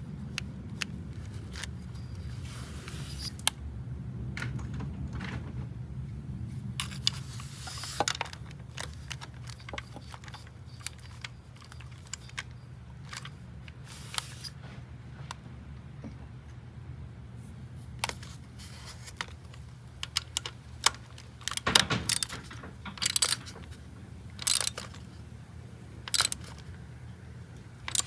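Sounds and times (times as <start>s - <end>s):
metal tools clinking: 6.8s - 13.4s, 19.2s - 23.8s, 24.4s - 25.2s, 26.1s - 26.7s.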